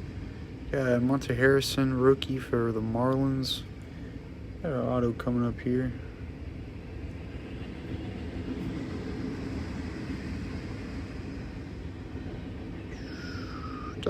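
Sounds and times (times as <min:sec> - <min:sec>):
train rumbling: 0:00.0 - 0:14.0
high tone sliding downward: 0:08.6 - 0:14.0.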